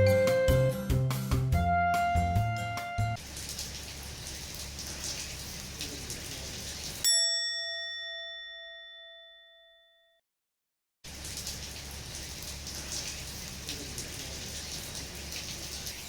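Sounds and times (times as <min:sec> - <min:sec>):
rain-like patter: 0:03.1 - 0:07.1, 0:11.1 - 0:16.0
bell-like ding: 0:07.0 - 0:10.2.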